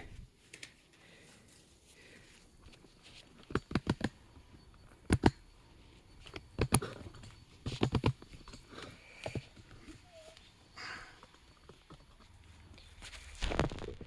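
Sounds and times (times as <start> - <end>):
metal tools clicking and knocking: 6.2 - 10.4.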